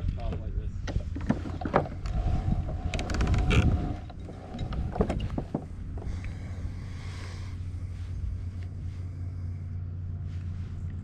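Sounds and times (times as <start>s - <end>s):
wind buffeting microphone: 0.0s - 8.9s
low rumble: 0.0s - 11.0s
thin steady hum: 0.0s - 11.0s.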